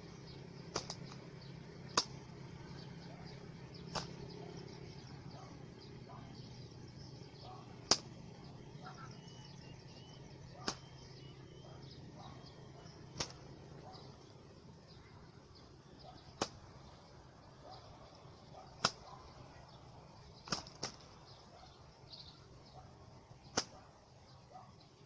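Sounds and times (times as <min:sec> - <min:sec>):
small birds chirping: 0:00.0 - 0:25.0
sharp clicks: 0:00.7 - 0:01.3, 0:13.1 - 0:13.4.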